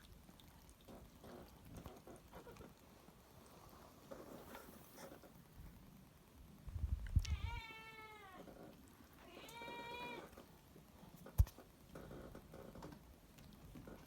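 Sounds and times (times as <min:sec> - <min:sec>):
cat meowing: 0:07.2 - 0:08.5, 0:09.2 - 0:10.3.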